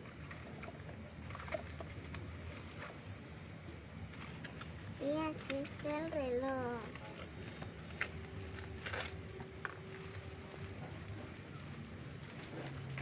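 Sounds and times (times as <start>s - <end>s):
packaging rustling: 4.1s - 13.0s.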